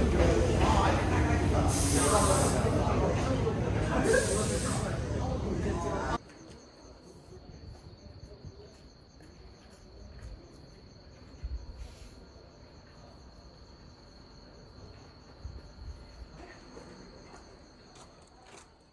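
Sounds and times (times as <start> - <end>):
crickets chirping: 0.0 - 18.9.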